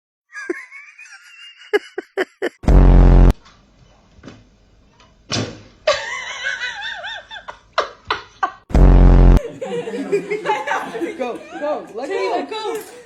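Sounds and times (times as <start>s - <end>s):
people giggling: 0.3s - 2.6s, 5.9s - 8.6s, 9.4s - 13.0s
loud flat buzz: 2.6s - 3.4s, 8.7s - 9.4s.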